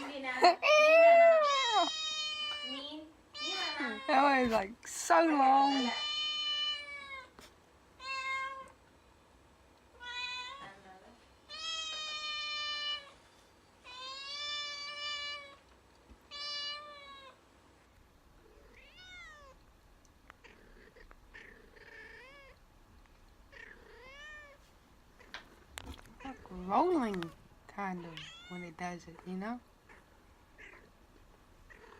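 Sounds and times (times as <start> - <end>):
cat meowing: 1.3 - 4.2, 5.6 - 7.3, 8.0 - 8.8, 10.0 - 10.8, 16.3 - 17.4, 18.6 - 19.6, 20.9 - 22.6, 23.5 - 24.6, 28.1 - 28.6.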